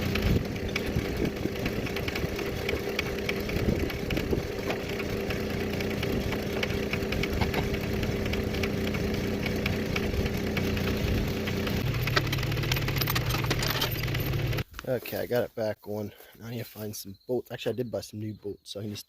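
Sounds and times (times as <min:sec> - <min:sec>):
engine idling: 0:00.0 - 0:14.8.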